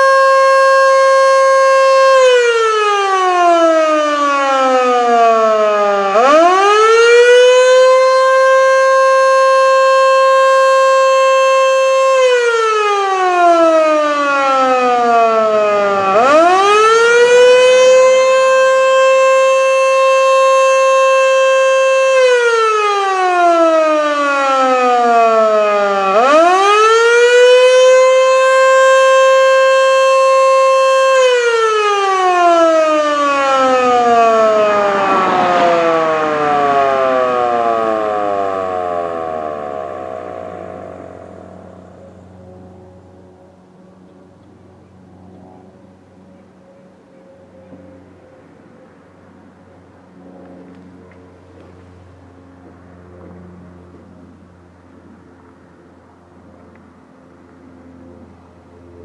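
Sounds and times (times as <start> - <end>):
fire siren wailing: 0.0 - 44.1.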